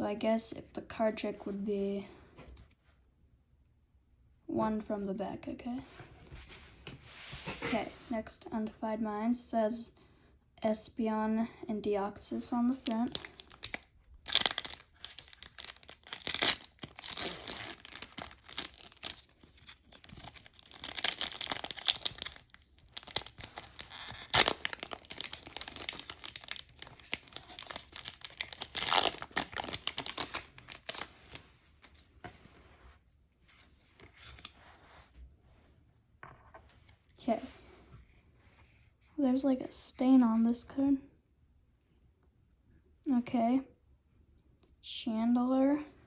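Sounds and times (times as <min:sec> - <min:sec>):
foil wrapper tearing and crinkling: 0:12.8 - 0:31.4.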